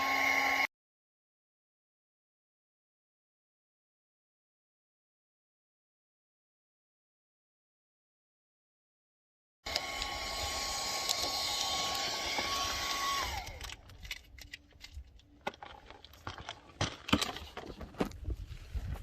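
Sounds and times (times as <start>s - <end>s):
electric blower whining: 0.0s - 0.7s, 9.7s - 13.9s.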